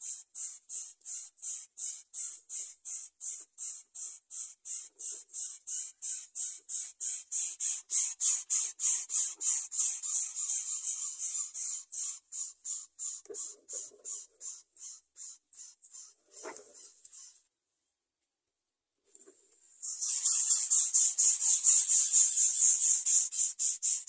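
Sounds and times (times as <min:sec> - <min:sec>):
nestlings hoarse hissing calls: 0:00.0 - 0:17.4, 0:19.8 - 0:24.0.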